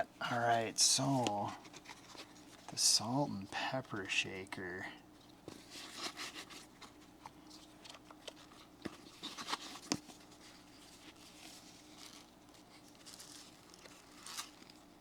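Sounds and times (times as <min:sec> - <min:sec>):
packaging rustling: 0:05.2 - 0:15.0.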